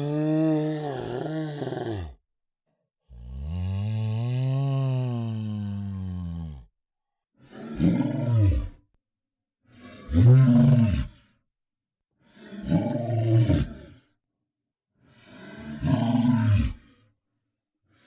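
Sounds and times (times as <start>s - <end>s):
monster roaring: 0.0s - 2.2s.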